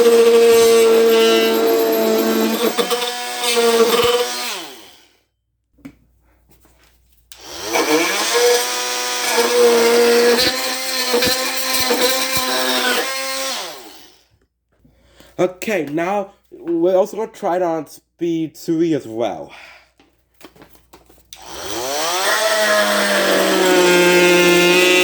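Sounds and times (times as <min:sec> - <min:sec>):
oscillating multi-tool cutting wood: 0:00.0 - 0:05.1, 0:07.4 - 0:14.2, 0:21.4 - 0:25.0.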